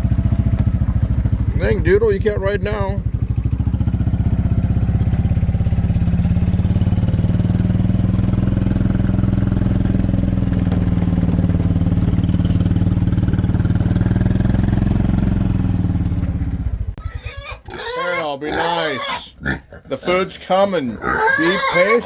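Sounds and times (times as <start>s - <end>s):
vehicle engine running steadily: 0.0s - 17.2s.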